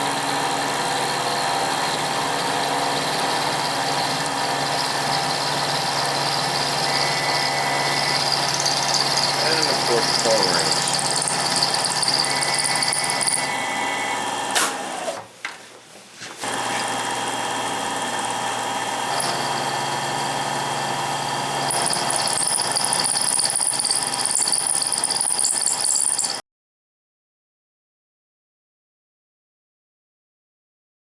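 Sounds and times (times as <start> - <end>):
high-pitched cutting whine: 0.0 - 14.2, 21.2 - 26.4
milling machine drone: 0.0 - 14.5, 17.0 - 26.4.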